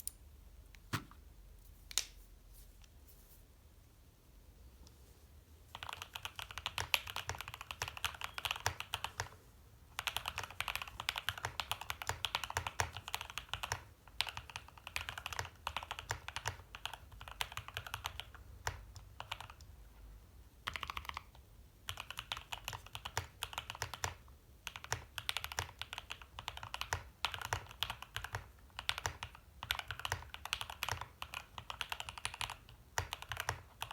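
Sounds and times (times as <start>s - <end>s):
mechanical keyboard typing: 5.7s - 9.4s, 10.0s - 19.7s, 20.6s - 33.9s.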